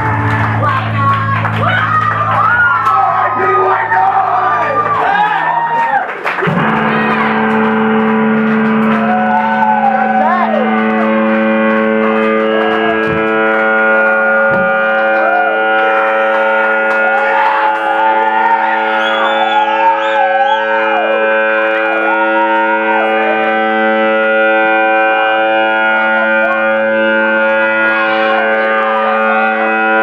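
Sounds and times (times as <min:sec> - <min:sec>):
echoing pitch-bending notes: 0:00.0 - 0:05.3, 0:06.4 - 0:30.0
band holding sustained chord: 0:20.1 - 0:30.0.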